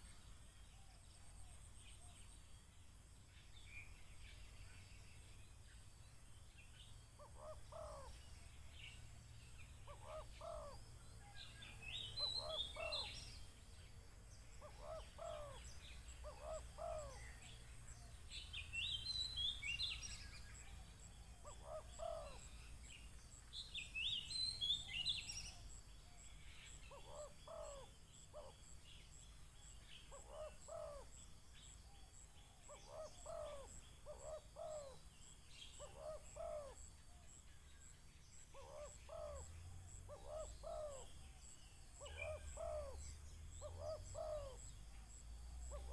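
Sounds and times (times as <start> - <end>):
doves cooing: 7.2 - 8.3, 9.8 - 10.9, 11.8 - 13.3, 14.6 - 17.6, 21.2 - 22.5, 26.9 - 28.6, 30.1 - 31.2, 32.6 - 35.0, 35.7 - 36.8, 38.6 - 41.4, 42.0 - 44.8.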